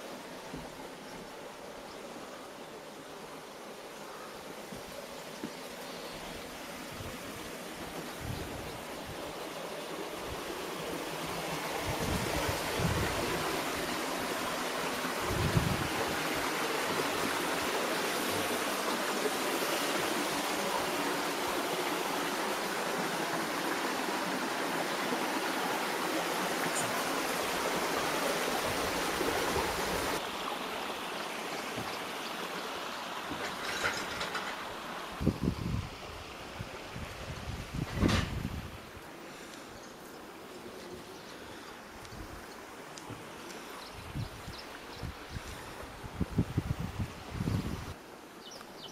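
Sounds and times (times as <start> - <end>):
waterfall pouring into pool: 9.6 - 35.1.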